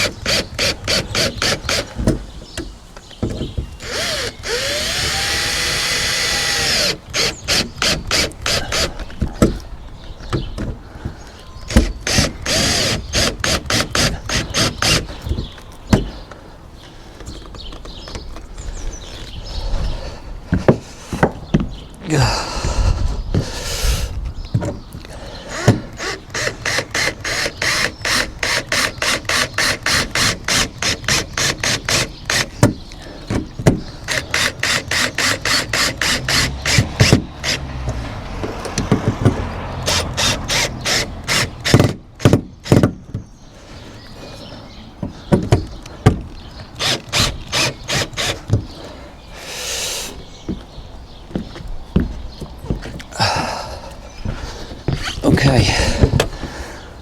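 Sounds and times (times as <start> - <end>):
power tool clicking rapidly: 3.8 - 8.9, 25.5 - 32.6, 46.8 - 48.4.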